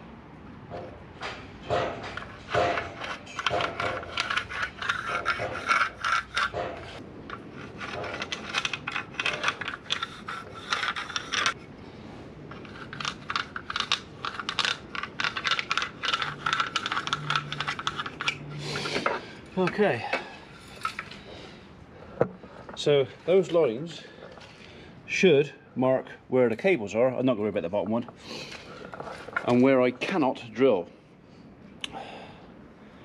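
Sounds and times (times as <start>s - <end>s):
marking tool scraping concrete: 2.2s - 11.7s.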